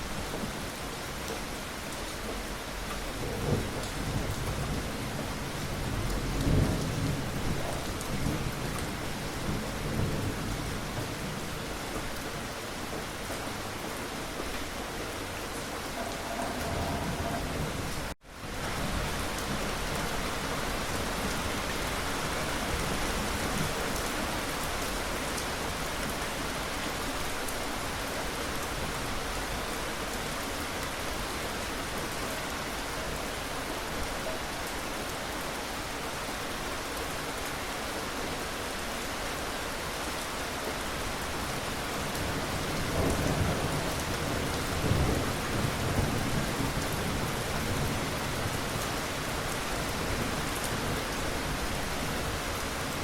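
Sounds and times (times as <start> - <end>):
heavy rain falling: 0.0 - 53.0
low thunder rumbling: 15.2 - 19.7.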